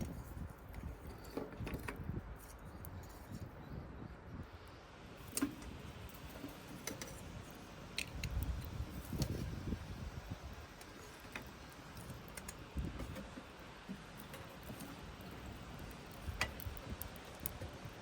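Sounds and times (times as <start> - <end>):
small wood fire crackling: 0.0 - 18.0.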